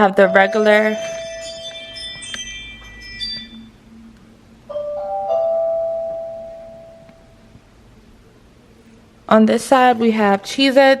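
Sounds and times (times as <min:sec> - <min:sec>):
two-note chime: 0:00.0 - 0:04.0
ringing bell-like tones: 0:00.0 - 0:04.1, 0:04.7 - 0:07.0.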